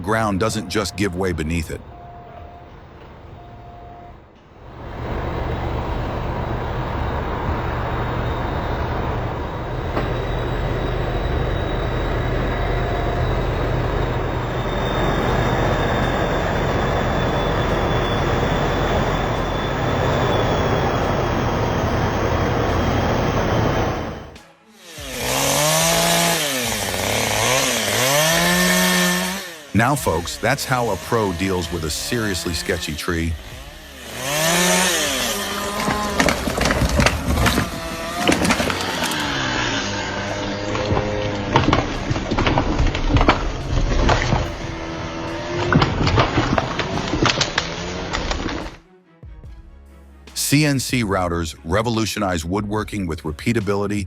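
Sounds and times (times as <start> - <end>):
heavy engine running under load: 0.0 - 24.4, 25.0 - 48.7
chainsaw revving: 9.1 - 48.8.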